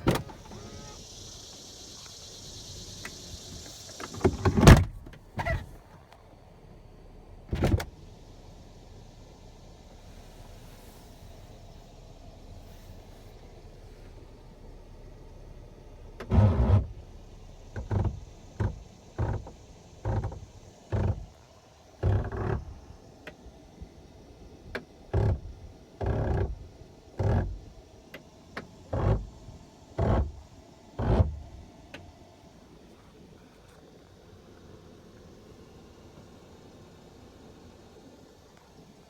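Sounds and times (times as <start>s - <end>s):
car door motor grinding: 0.0s - 1.3s, 3.0s - 5.9s, 16.2s - 17.0s, 17.8s - 21.3s, 22.0s - 22.8s, 27.2s - 27.6s, 28.9s - 29.4s, 30.0s - 30.4s, 31.0s - 31.4s.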